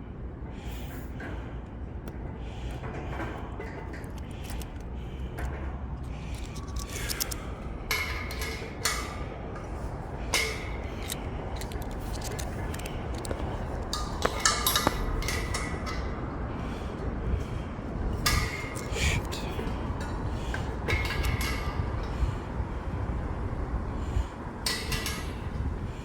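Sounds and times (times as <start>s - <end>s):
steady low hum: 0.0s - 26.0s
metallic clinks of tools handled: 6.2s - 9.2s, 10.4s - 16.0s.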